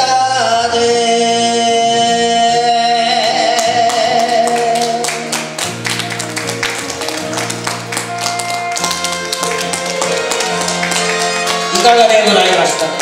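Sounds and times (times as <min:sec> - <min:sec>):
man singing with vibrato: 0:00.0 - 0:05.6
karaoke backing track: 0:00.0 - 0:13.0.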